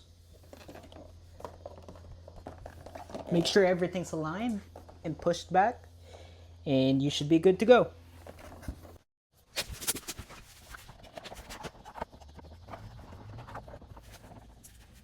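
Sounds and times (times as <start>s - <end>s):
low steady hum: 0.0s - 9.0s.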